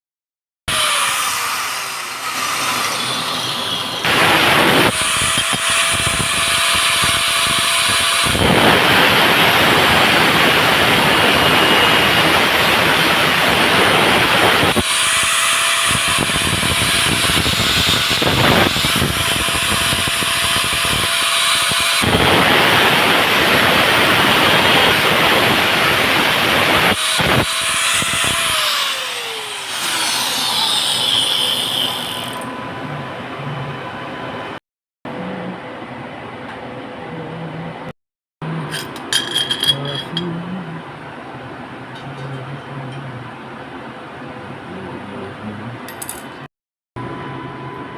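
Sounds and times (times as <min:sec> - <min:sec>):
welding arc crackling: 0:04.0 - 0:14.9, 0:15.9 - 0:27.6.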